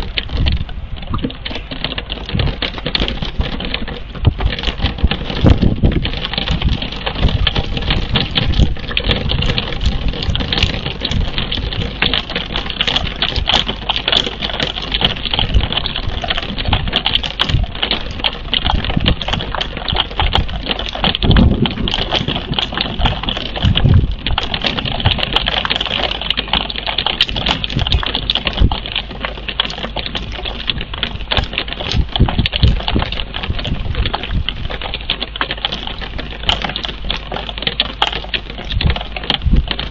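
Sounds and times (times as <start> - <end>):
rain drops pattering: 0.0 - 39.9.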